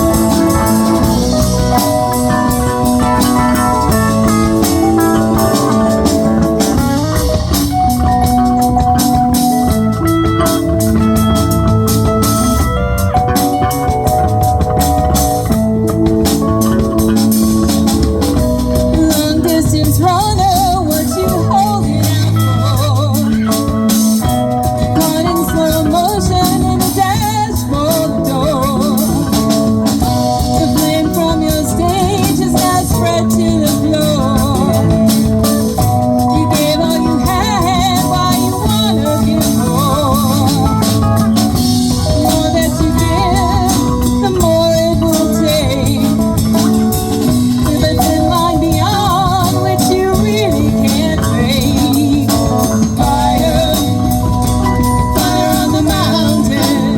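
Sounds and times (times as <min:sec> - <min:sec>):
live rock band playing: 0:00.0 - 0:56.9
person singing: 0:17.0 - 0:56.9.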